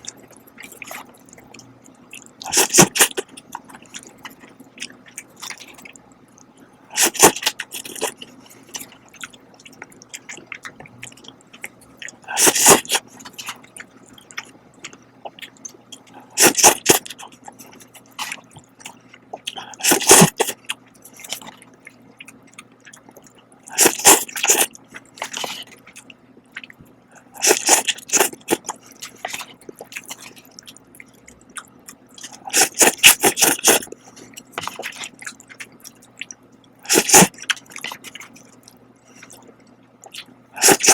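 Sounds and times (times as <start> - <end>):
chewing: 0.0 - 40.9
loud slurping of noodles: 12.4 - 13.0, 16.4 - 17.0, 19.8 - 20.4, 23.8 - 24.7, 27.4 - 28.3, 32.5 - 33.8, 36.9 - 37.3, 40.6 - 40.9.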